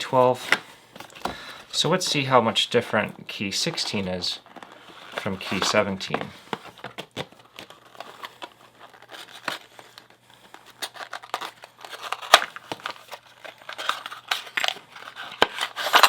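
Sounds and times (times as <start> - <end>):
packaging crinkling and tearing: 3.9 - 16.0.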